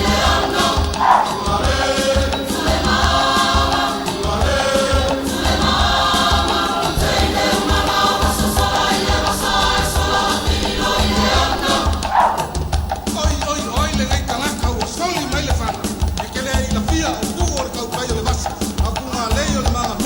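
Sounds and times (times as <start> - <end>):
group of voices singing: 0.0 - 20.0
steady beat: 0.0 - 20.0.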